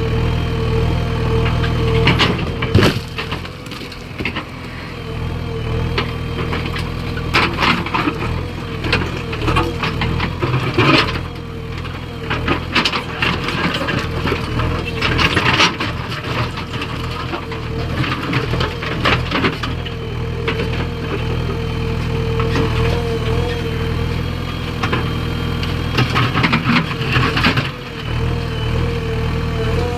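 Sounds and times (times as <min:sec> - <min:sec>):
engine running: 0:00.0 - 0:29.9
clattering knocks of stone: 0:02.1 - 0:04.5.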